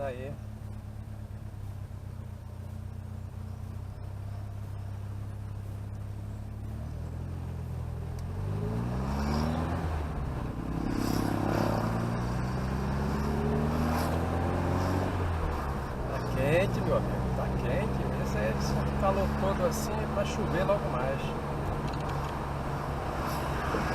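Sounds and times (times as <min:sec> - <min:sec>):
car engine pulling away: 0:00.0 - 0:23.9.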